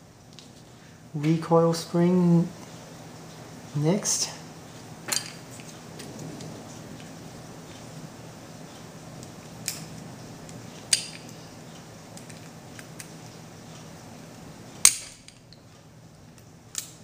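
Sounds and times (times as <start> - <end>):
pistol parts clicking together: 16.4 - 17.0.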